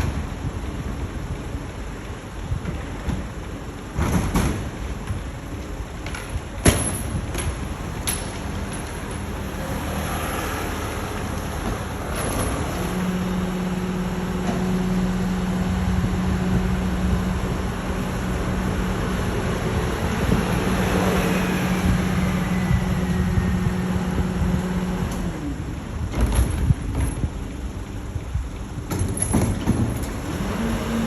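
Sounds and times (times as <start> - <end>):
garbage truck engine running: 0.0 - 31.0
steady low hum: 11.0 - 29.2.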